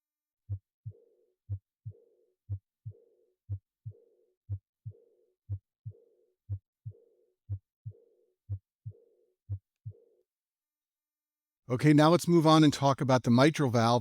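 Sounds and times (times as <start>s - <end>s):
heartbeat thuds: 0.5s - 0.7s, 1.5s - 10.0s.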